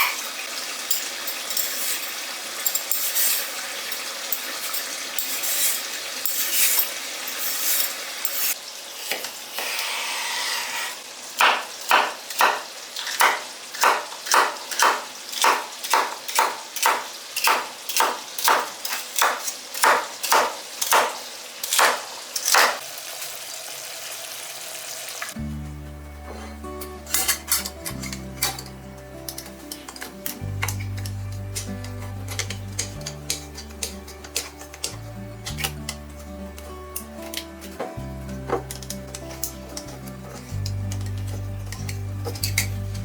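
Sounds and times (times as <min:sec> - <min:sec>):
food sizzling in a pan: 0:00.0 - 0:25.5
spatula stirring: 0:27.1 - 0:42.9.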